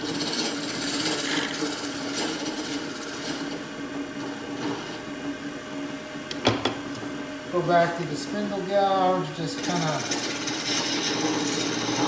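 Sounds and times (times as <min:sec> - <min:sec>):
turning tool scraping wood: 0:00.0 - 0:05.1, 0:07.7 - 0:12.0
lathe motor humming: 0:00.0 - 0:12.0.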